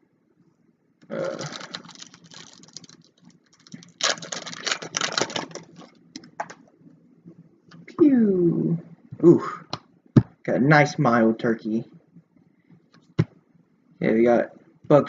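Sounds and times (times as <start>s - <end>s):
foil wrapper crinkling and tearing: 1.1s - 6.6s.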